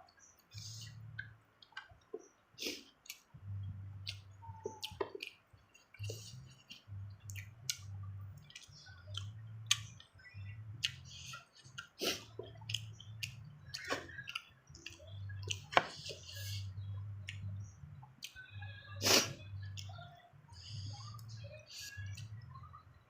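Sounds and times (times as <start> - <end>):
wet mouth clicks: 4.0 - 10.1, 10.8 - 18.4.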